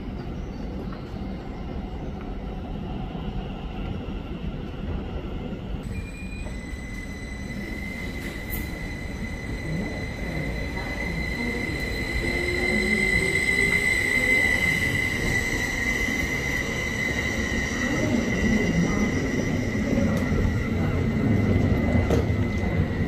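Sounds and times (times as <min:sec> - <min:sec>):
train rumbling: 0:00.0 - 0:23.0
train wheels squealing: 0:05.0 - 0:23.0.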